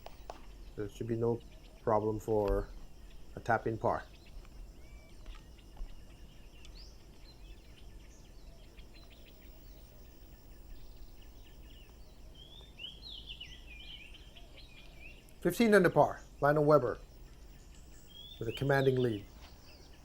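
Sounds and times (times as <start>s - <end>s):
birds chirping: 0.0s - 20.0s
steady low hum: 0.0s - 20.0s.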